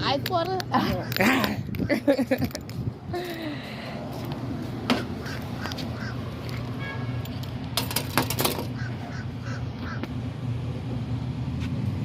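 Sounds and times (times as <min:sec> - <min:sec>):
bird calling: 0:04.9 - 0:06.4, 0:08.7 - 0:10.1.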